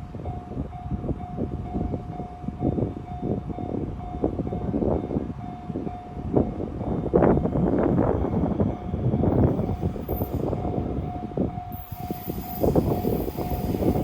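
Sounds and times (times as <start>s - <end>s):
train rumbling past: 0.0s - 14.0s
level crossing warning bell: 0.3s - 14.0s.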